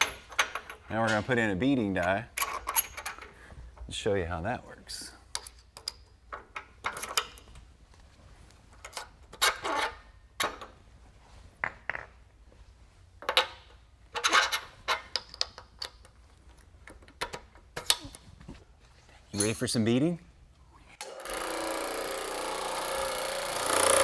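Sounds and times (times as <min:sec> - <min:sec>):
metal clinks and scrapes: 0:19.2 - 0:19.7.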